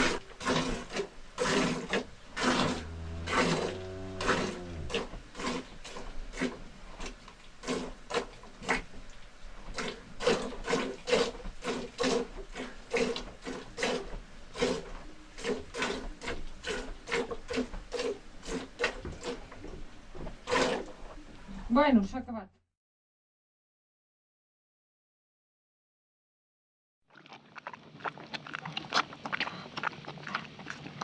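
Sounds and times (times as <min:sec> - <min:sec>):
farm animal short calls: 0:02.1 - 0:05.3.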